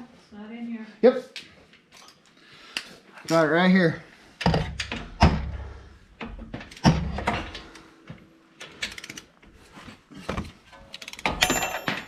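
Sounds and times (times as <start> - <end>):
hand tools clunking: 4.4 - 12.0.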